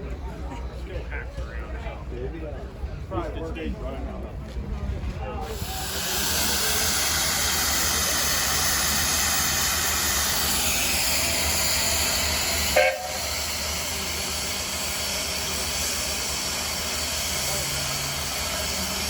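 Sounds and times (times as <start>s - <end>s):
steam engine low rumble: 0.0s - 19.0s
steam hissing: 5.4s - 19.0s.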